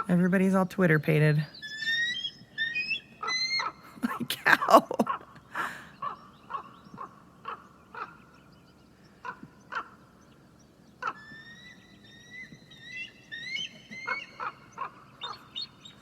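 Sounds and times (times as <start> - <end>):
eagle whistled chatter: 1.5 - 3.8, 11.0 - 16.0.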